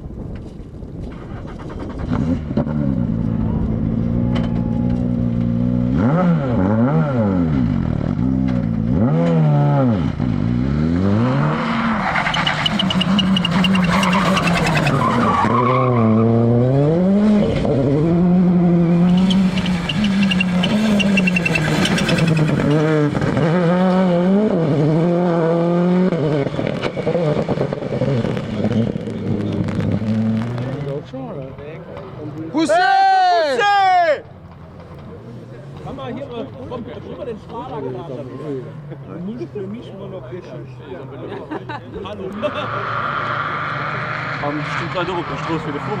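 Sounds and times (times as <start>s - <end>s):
rally car engine revving: 1.4s - 32.2s, 42.1s - 46.0s
tyre squeal: 11.9s - 16.4s, 19.0s - 22.9s.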